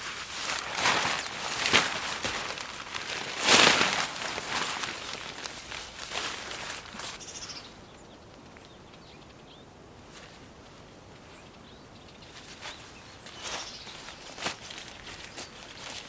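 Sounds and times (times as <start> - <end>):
rustling: 0.0 - 7.5, 12.2 - 16.0
faint bird chirps: 7.2 - 9.8.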